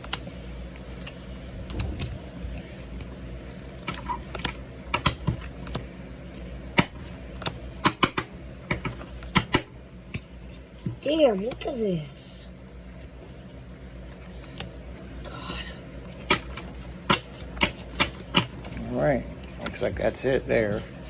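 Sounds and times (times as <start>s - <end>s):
trading cards clicking and snapping: 0.0s - 5.9s, 6.8s - 10.4s, 16.0s - 18.8s.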